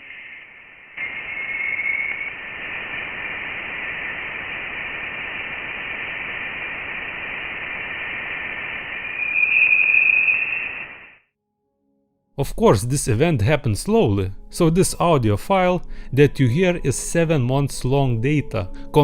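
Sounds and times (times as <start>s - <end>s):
thin whistling tone: 0.0s - 2.6s, 9.0s - 11.2s
static hiss: 0.0s - 11.2s.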